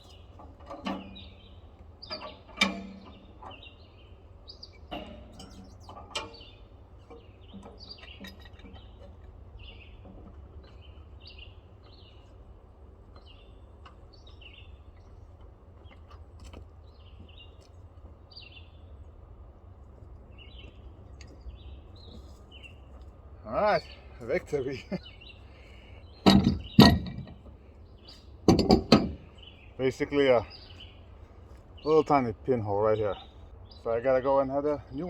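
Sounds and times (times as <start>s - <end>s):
small birds chirping: 0.0s - 35.0s
sharp knocks: 26.2s - 27.4s, 28.4s - 29.3s.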